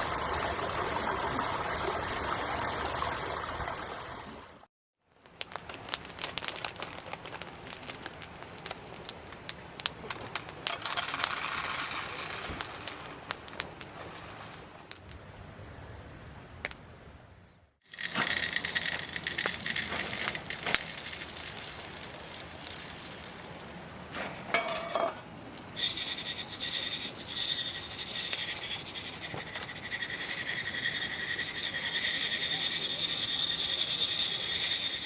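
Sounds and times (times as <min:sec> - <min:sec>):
small hard objects rattling: 0:05.2 - 0:15.0, 0:17.8 - 0:35.0
scraping: 0:09.9 - 0:14.8, 0:17.9 - 0:35.0.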